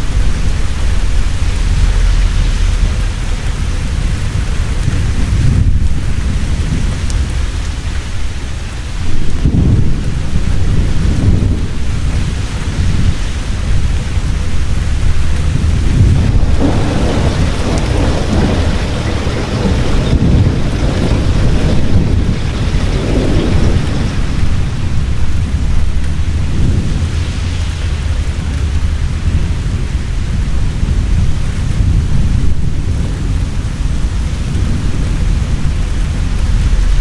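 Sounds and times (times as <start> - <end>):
heavy rain pouring: 0.0 - 37.0
thunder rumbling: 0.0 - 37.0.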